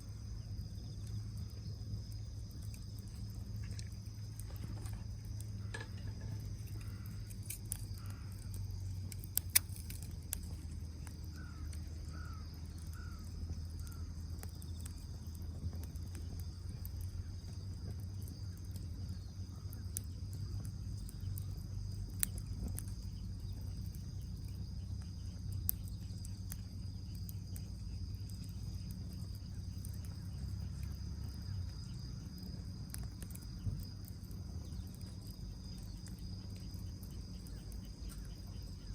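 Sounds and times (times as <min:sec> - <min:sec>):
insects droning: 0:00.0 - 0:38.9
wood fire crackling and popping: 0:00.0 - 0:38.9
bird calls: 0:11.3 - 0:14.1.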